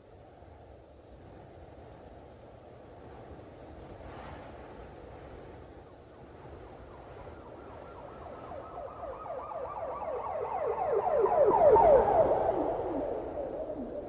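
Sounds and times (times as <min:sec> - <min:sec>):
police siren yelp: 0:07.0 - 0:14.0
low rumble: 0:11.1 - 0:14.0.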